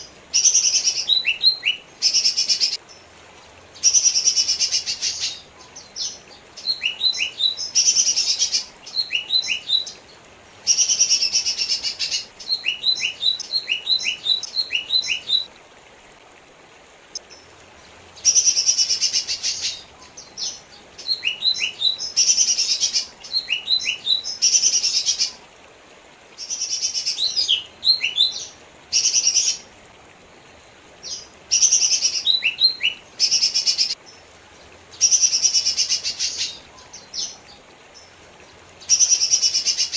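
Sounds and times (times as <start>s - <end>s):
bird singing: 0.0s - 3.0s, 3.8s - 10.0s, 10.7s - 15.5s, 18.2s - 25.4s, 31.1s - 34.2s.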